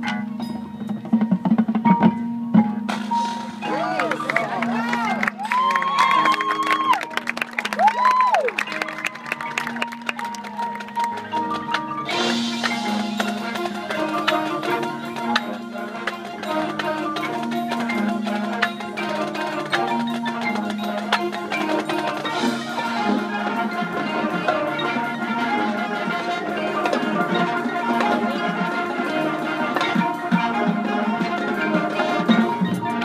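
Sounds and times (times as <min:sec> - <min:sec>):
mallet percussion notes: 0:00.0 - 0:33.0
wind instrument chords: 0:03.2 - 0:33.0.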